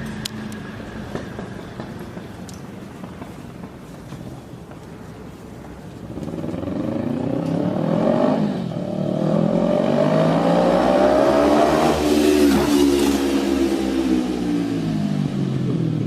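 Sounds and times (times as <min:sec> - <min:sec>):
motorcycle engine revving: 0:06.0 - 0:16.0.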